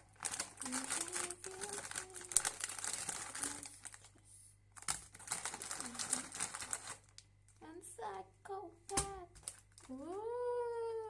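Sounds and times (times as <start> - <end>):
biscuit sticks crunching: 0.0 - 4.1, 4.8 - 7.2.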